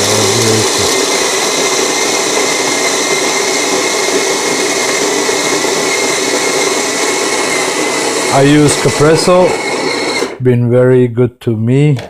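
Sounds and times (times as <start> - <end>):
electric coffee grinder whirring: 0.0 - 10.4.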